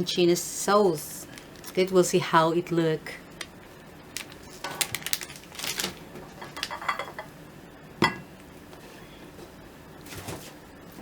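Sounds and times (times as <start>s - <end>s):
kitchenware clicks and clinks: 4.6s - 7.3s.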